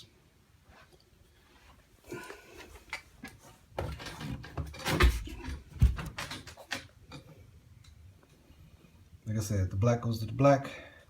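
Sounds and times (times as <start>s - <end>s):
dull thumps: 4.6s - 6.3s.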